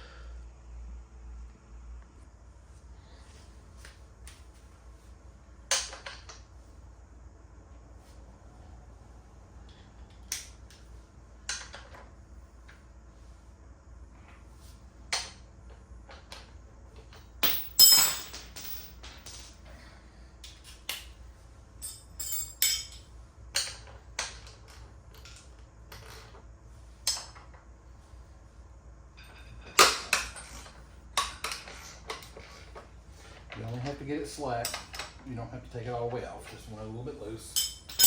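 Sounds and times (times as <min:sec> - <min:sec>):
metal hand tools clinking: 0:17.4 - 0:19.5, 0:21.8 - 0:23.0, 0:37.5 - 0:38.0.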